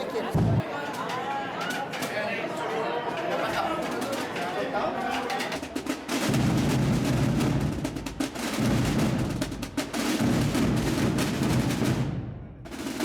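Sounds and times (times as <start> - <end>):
bass drums beating: 0.4 - 0.6
snare drums rolling: 3.4 - 13.0.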